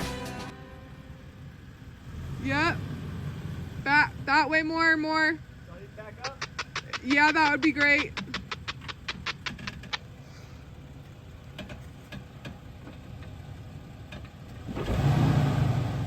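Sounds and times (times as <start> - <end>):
vehicle engine running low: 0.0 - 16.0
sharp clicks or rattles: 6.2 - 10.2.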